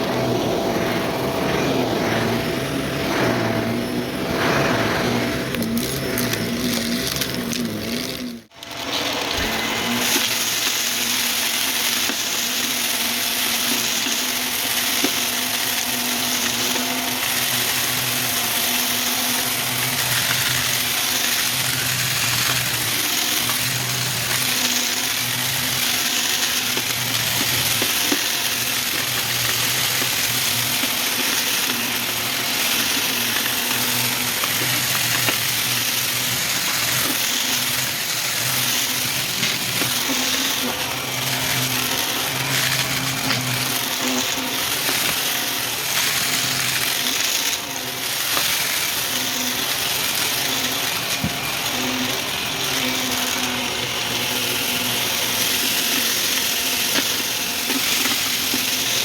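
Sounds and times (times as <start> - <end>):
debris crunching: 0.0 - 59.0
vacuum cleaner running: 0.0 - 59.0.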